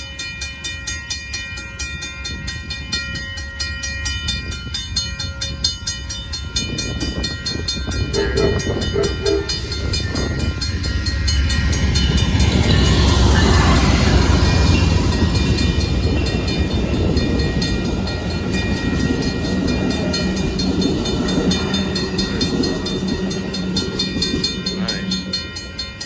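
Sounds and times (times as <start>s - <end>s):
crossing bell ringing: 0.0s - 26.0s
train rumbling: 0.0s - 26.0s
short train horn sounds: 8.1s - 9.7s.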